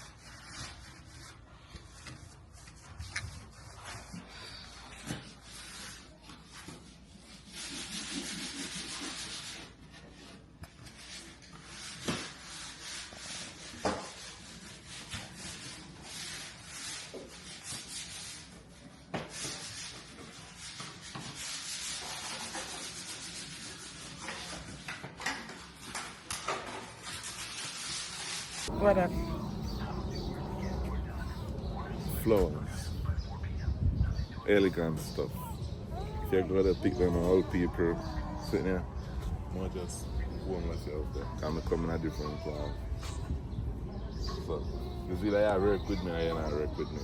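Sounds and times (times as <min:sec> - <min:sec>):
rubbing strokes on a surface: 0:00.0 - 0:33.2.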